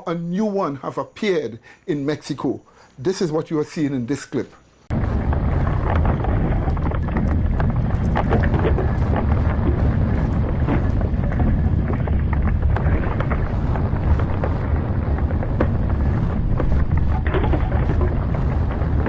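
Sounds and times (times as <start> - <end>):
low rumbling noise: 4.9 - 19.0
short crackles and clicks: 4.9 - 19.0.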